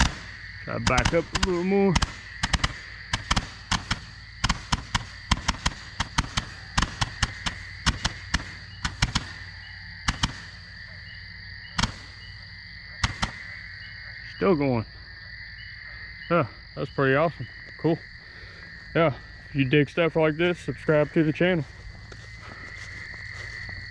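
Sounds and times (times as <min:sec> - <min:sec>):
firework bangs: 0:00.0 - 0:10.9, 0:11.7 - 0:12.4, 0:13.0 - 0:13.6
insects trilling: 0:00.0 - 0:23.9.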